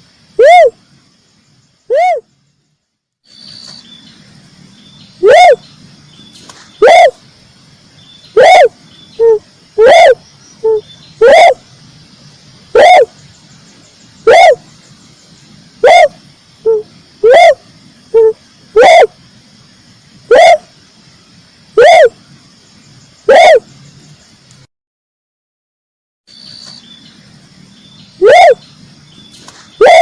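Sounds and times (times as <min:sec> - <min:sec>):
dove cooing: 0:01.9 - 0:02.2, 0:05.2 - 0:05.6, 0:06.8 - 0:07.2, 0:08.4 - 0:11.6, 0:12.7 - 0:13.2, 0:14.2 - 0:14.6, 0:15.8 - 0:19.2, 0:20.3 - 0:20.7, 0:21.8 - 0:22.2, 0:23.3 - 0:23.7, 0:28.2 - 0:28.6, 0:29.8 - 0:30.0.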